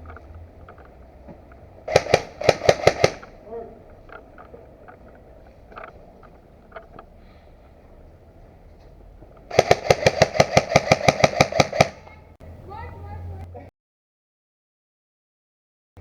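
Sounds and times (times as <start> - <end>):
small scattered clicks: 0.0 - 7.8
airsoft gun firing: 1.9 - 3.5, 9.5 - 12.2.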